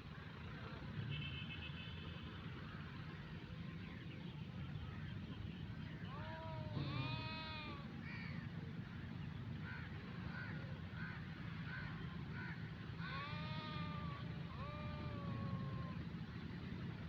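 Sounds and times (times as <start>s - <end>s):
sheep bleating: 6.1s - 8.0s, 13.0s - 16.0s.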